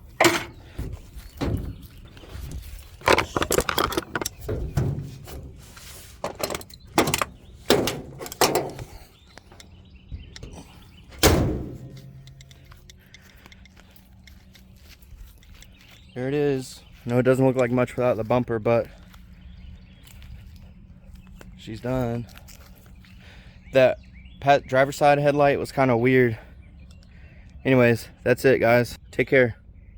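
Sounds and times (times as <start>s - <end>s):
knocks and clatter of handling objects: 0.0s - 9.7s
loud ringing thump: 11.2s - 12.0s.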